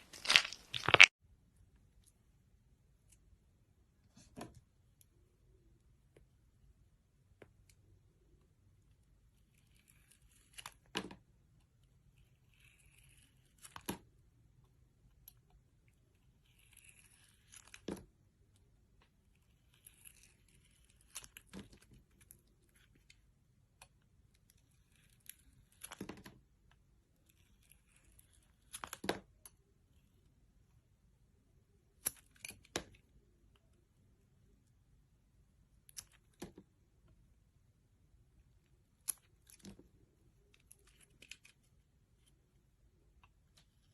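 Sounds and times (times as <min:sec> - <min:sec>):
soft crinkling: 0:00.0 - 0:01.1
brittle material snapping: 0:00.1 - 0:01.1.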